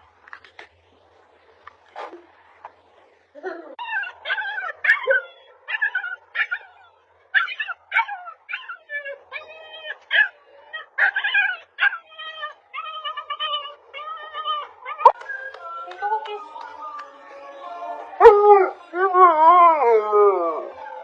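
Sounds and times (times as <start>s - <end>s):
puppy yelping: 3.8s - 15.2s.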